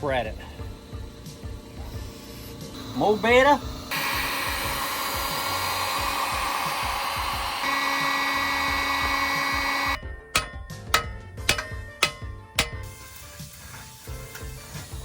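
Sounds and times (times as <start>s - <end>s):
torch hissing: 1.8s - 10.0s
sharp metallic clicks: 9.3s - 12.9s.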